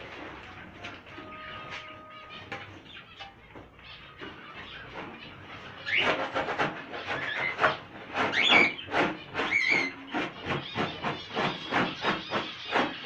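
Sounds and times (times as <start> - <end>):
small bird calling: 1.2 - 13.0
brisk rhythmic scrubbing: 4.2 - 13.0.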